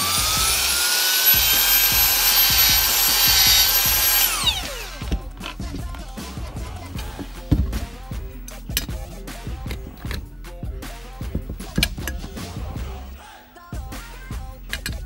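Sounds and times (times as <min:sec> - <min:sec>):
angle grinder motor whining: 0:00.0 - 0:06.1.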